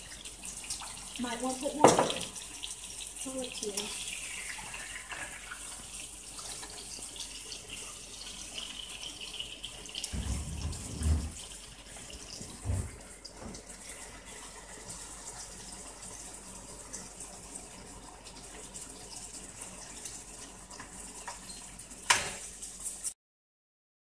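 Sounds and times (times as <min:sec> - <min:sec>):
tomato sizzling in oil: 0:00.0 - 0:23.2
low knocks: 0:10.2 - 0:11.4.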